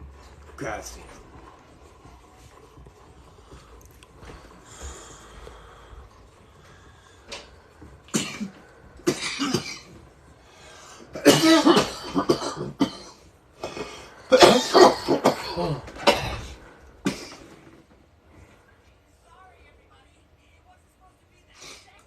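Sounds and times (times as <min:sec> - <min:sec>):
person coughing: 0:08.1 - 0:10.0, 0:11.1 - 0:17.5.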